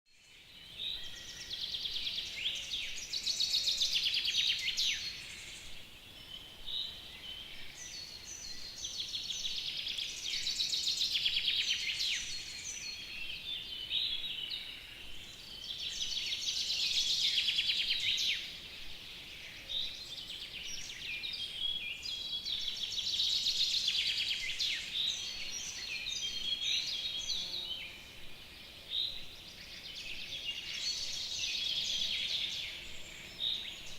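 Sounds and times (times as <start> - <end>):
songbird trilling song: 0.1 - 33.9.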